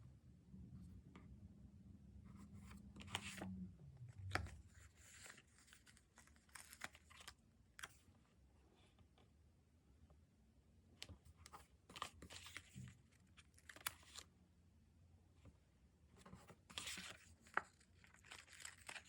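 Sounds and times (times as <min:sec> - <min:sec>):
faint low hum: 0:00.0 - 0:19.0
stickers peeling and paper rustling: 0:04.1 - 0:08.0, 0:16.4 - 0:19.0.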